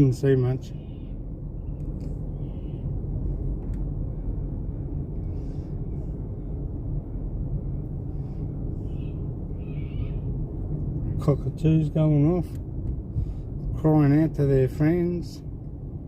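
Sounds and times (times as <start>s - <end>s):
low outdoor rumble: 0.0s - 16.0s
distant cockatoo calls: 2.3s - 2.9s, 8.8s - 10.3s.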